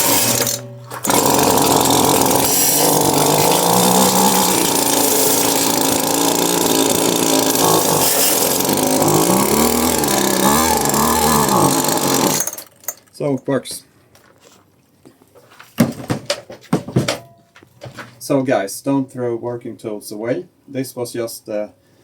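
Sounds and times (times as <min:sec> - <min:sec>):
small petrol engine running: 0:00.0 - 0:13.0.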